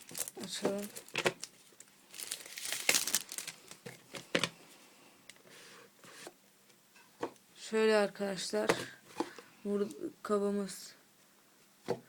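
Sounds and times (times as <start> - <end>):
box rustling: 0.0 - 4.0.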